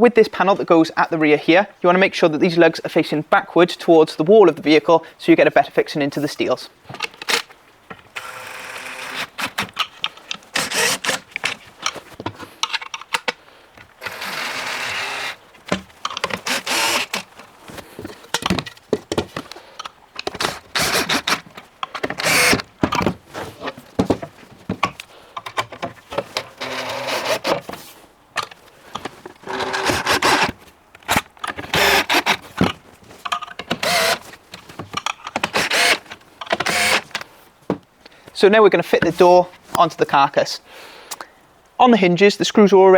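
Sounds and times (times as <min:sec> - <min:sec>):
power driver whirring: 0:08.2 - 0:09.8, 0:10.4 - 0:11.6, 0:14.0 - 0:17.4, 0:20.2 - 0:22.7, 0:26.4 - 0:27.6, 0:29.4 - 0:30.5, 0:31.6 - 0:32.4, 0:33.7 - 0:34.2, 0:35.4 - 0:37.2
wooden boards knocking and rattling: 0:09.3 - 0:27.8.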